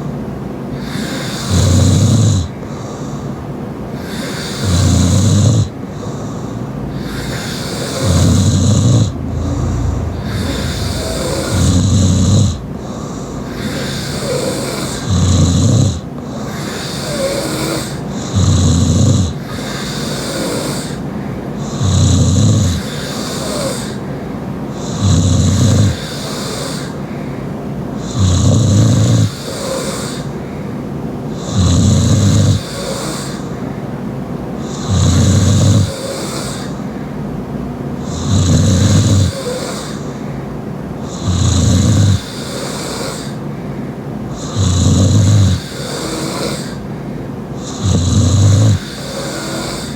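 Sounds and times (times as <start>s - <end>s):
woman snoring: 0.8s - 2.5s, 4.0s - 16.0s, 34.7s - 36.7s, 38.0s - 40.0s, 41.0s - 43.4s, 44.4s - 46.8s, 47.6s - 49.9s.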